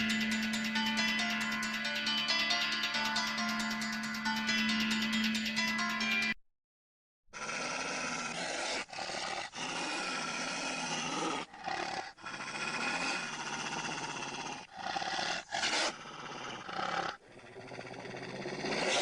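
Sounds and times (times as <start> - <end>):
large animal growling and roaring: 7.4 - 19.0.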